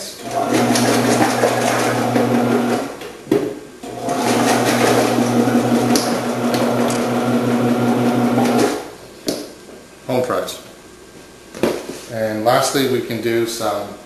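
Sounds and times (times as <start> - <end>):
vegetable processor motor humming: 0.2 - 3.0, 3.8 - 8.8.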